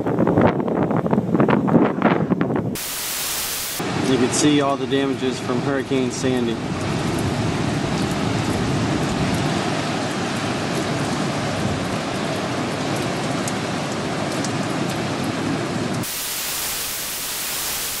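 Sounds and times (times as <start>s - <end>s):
wind: 0.0s - 18.0s
even hiss: 2.8s - 4.3s, 16.0s - 18.0s
rain: 2.8s - 18.0s.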